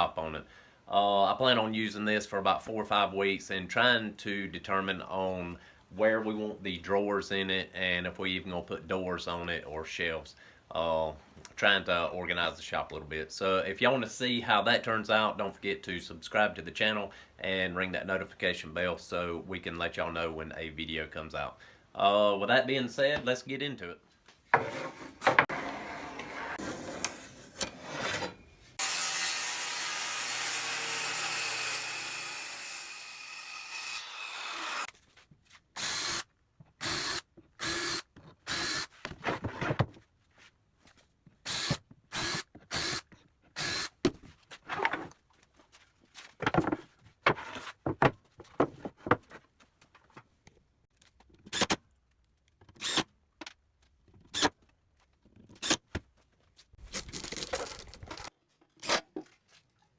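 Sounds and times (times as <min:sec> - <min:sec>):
power tool running: 0:28.8 - 0:34.9
power drill short bursts: 0:36.8 - 0:38.9, 0:41.5 - 0:43.0
wood knocking and clattering: 0:46.4 - 0:50.2.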